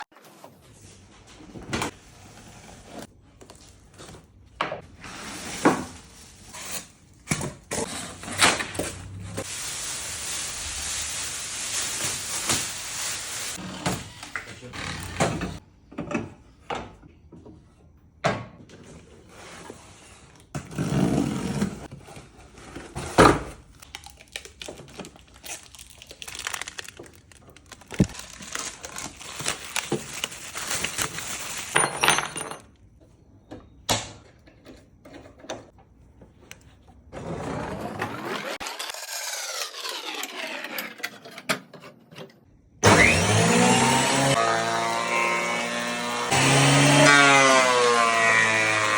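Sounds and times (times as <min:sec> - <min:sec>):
knocks and clatter of wood and tools: 0:13.9 - 0:19.1.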